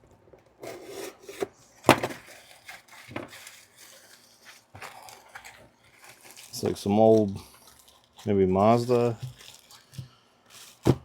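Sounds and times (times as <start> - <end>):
cardboard packaging rustling: 0.6 - 11.0.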